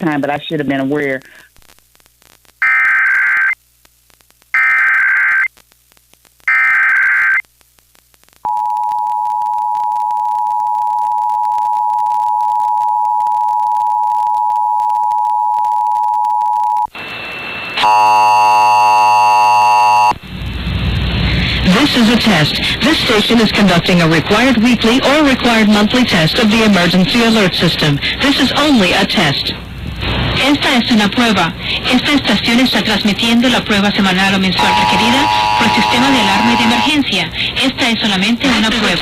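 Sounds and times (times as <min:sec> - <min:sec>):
warbling data screeches: 0:04.6 - 0:05.5, 0:34.6 - 0:37.0
harsh buzzing tone: 0:16.6 - 0:20.2, 0:34.6 - 0:37.0
two-tone attention signal: 0:34.6 - 0:37.0.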